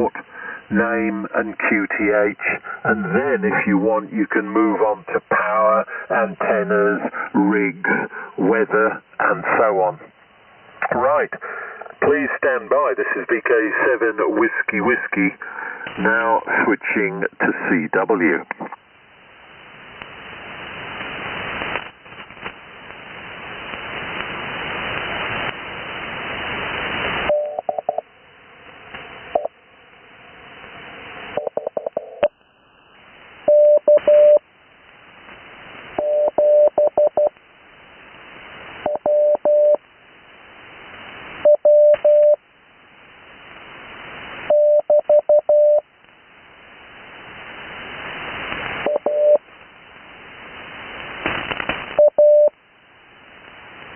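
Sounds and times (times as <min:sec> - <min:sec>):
radio band hiss: 0:00.0 - 0:53.9
morse code tone: 0:27.3 - 0:28.0, 0:33.5 - 0:34.4, 0:36.0 - 0:37.3, 0:38.9 - 0:39.8, 0:44.5 - 0:45.8, 0:48.9 - 0:49.4.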